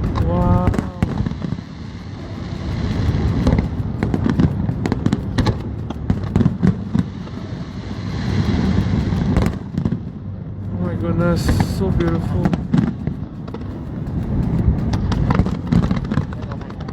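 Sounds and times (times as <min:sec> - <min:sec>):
fireworks cracks and pops: 0:00.0 - 0:10.2, 0:11.2 - 0:16.9.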